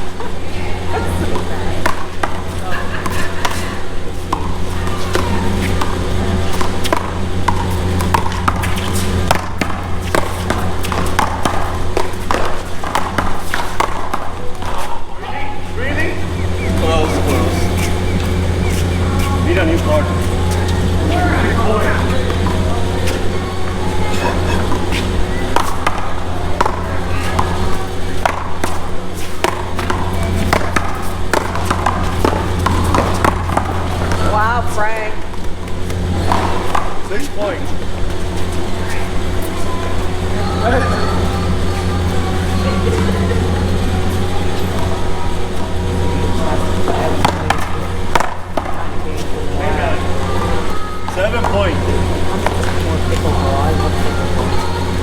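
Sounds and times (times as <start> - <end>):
ball cracking off paddles: 1.0 - 34.6, 35.2 - 55.0
ball smacking wall and court: 1.3 - 15.0, 16.2 - 34.5, 46.7 - 48.8
steady low rumble: 15.5 - 55.0.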